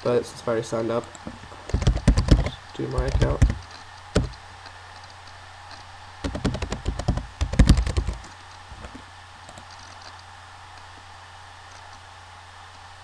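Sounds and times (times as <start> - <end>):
typing on computer keyboard: 1.7 - 4.4, 6.2 - 8.3.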